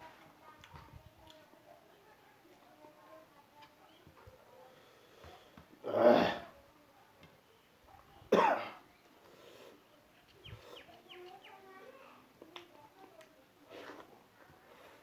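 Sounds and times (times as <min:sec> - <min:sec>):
person coughing: 0:08.3 - 0:08.8.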